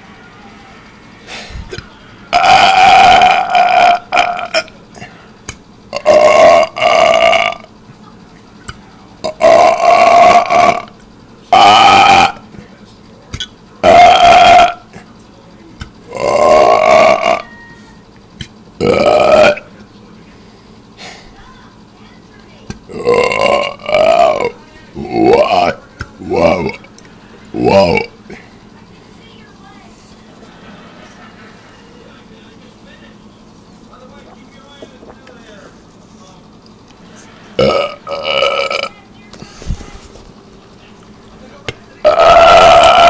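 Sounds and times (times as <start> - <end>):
person burping loudly: 1.7 - 5.1, 5.9 - 7.7, 9.2 - 12.4, 13.8 - 15.0, 16.1 - 17.5, 18.8 - 19.7, 22.9 - 26.9, 27.5 - 28.4, 37.6 - 39.0, 42.0 - 43.0.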